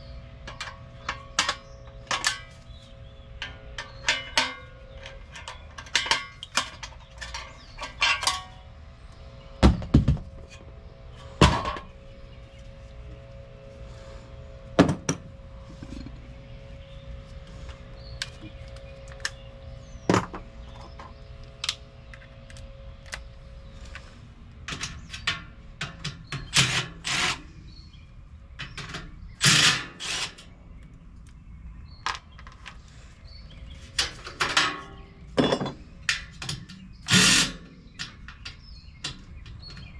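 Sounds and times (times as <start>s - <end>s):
faint steady hum: 0.0s - 39.9s
hand tools and metal parts clanking: 0.4s - 12.2s, 14.8s - 27.8s, 28.5s - 30.6s, 31.9s - 39.9s.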